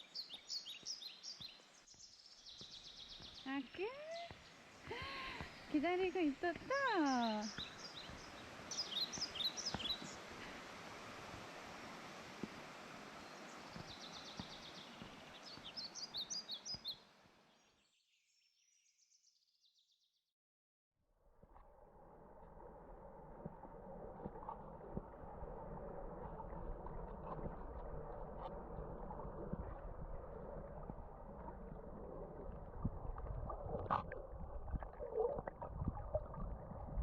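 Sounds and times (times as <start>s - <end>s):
small birds chirping: 0.0s - 11.0s, 12.7s - 19.1s
stream water running over rocks: 0.0s - 17.4s, 22.6s - 37.0s.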